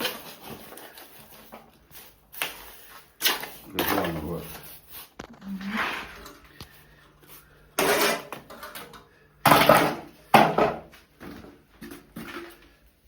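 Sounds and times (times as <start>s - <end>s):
hand tools scraping hard material: 7.8s - 8.4s.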